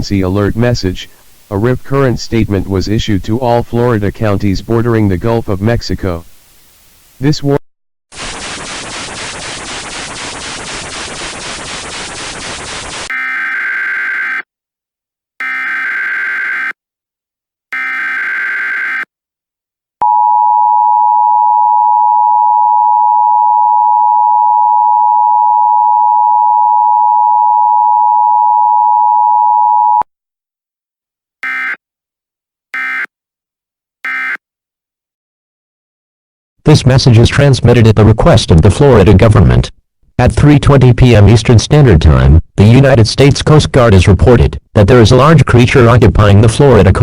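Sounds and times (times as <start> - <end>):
static hiss with flutter: 0.0 - 7.6, 8.2 - 13.2
digital data bursts: 8.2 - 14.4.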